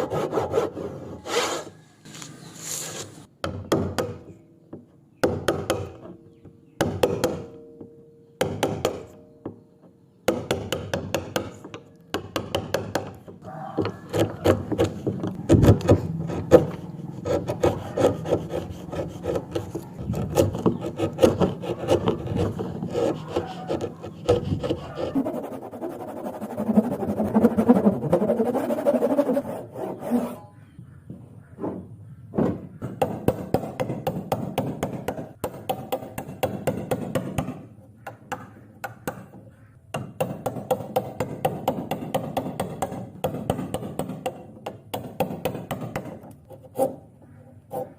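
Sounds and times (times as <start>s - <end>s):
hand tool rasping on wood: 0.0s - 1.8s, 13.7s - 30.4s.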